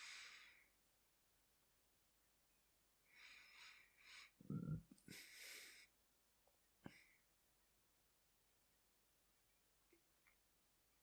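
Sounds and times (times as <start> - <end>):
faint breaths: 0.0 - 0.8, 3.0 - 6.0, 6.8 - 7.4.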